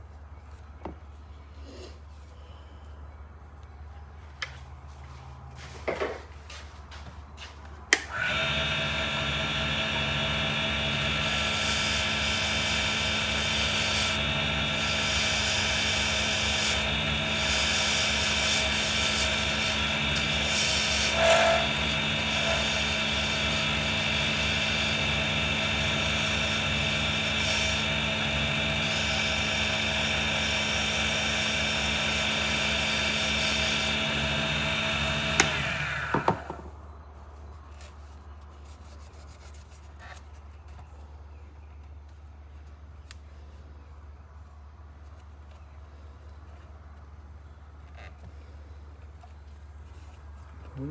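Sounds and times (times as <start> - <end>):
lathe motor whine: 8.1 - 36.7
lathe switch click: 35.2 - 36.6.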